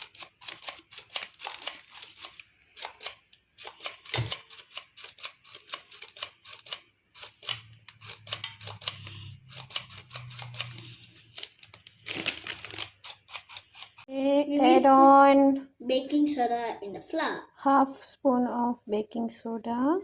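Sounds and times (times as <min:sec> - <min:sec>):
kitchen utensils clicking and scraping: 0:00.0 - 0:11.3, 0:12.1 - 0:14.1.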